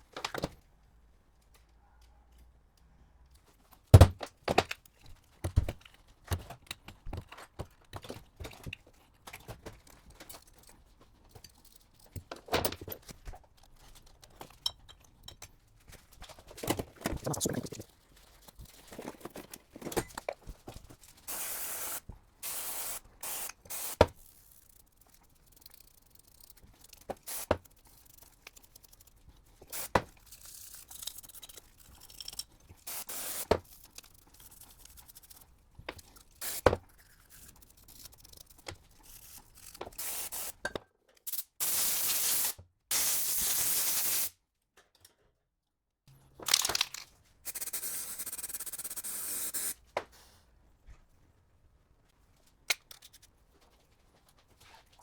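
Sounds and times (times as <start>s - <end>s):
hissing spray bursts: 21.3s - 24.0s, 32.9s - 33.5s, 41.3s - 44.3s, 47.5s - 49.8s.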